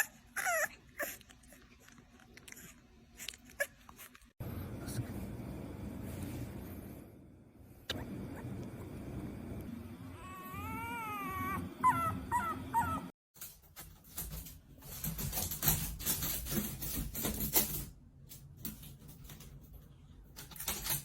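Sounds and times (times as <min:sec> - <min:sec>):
puppy whining and yelping: 0:00.0 - 0:04.2, 0:10.0 - 0:13.2.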